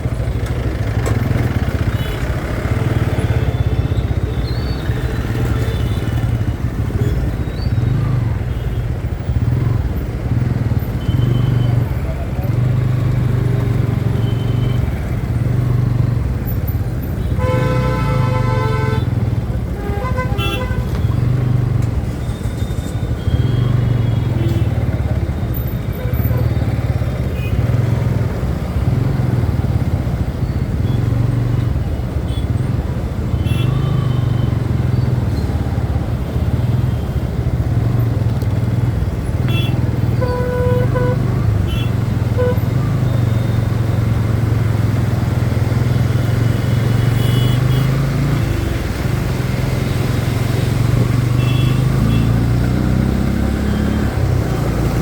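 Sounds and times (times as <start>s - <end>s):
traffic noise: 0.0s - 55.0s
horns honking: 17.0s - 28.0s, 30.8s - 37.9s, 39.2s - 49.2s, 49.8s - 55.0s.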